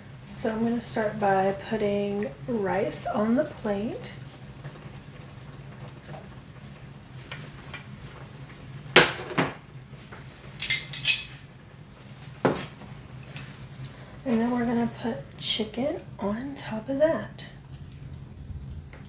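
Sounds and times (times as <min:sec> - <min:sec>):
spoon clinking on dishes: 0:10.6 - 0:11.4
spoon scraping dishes: 0:10.6 - 0:11.4.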